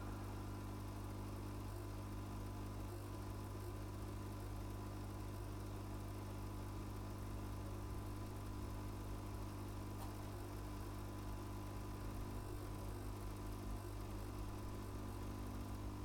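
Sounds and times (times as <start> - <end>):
electronic equipment hum: 0.0 - 4.0.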